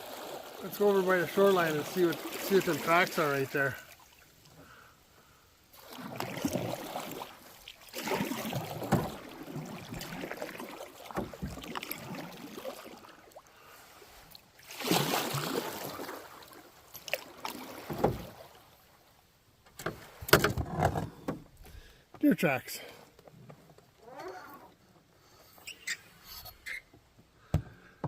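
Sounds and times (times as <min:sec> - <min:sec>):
paddles splashing through water: 0:00.0 - 0:19.1.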